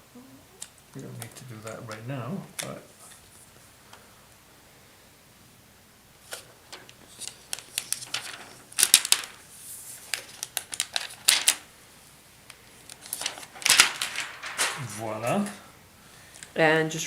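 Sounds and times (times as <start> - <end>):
plastic film clicks and crinkles: 0.6 - 3.2, 6.2 - 11.7, 12.4 - 15.5.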